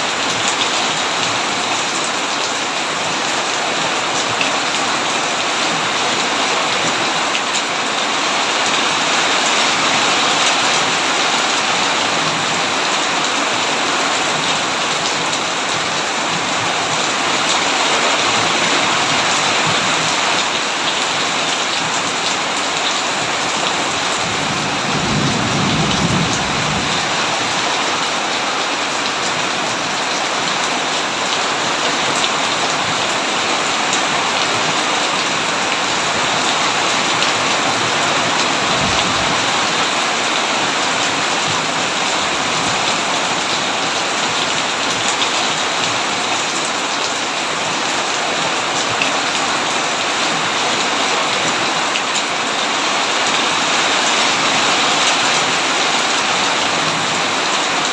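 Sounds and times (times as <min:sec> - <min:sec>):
heavy rain falling: 0:00.0 - 0:57.9
thunder rumble: 0:24.3 - 0:27.6.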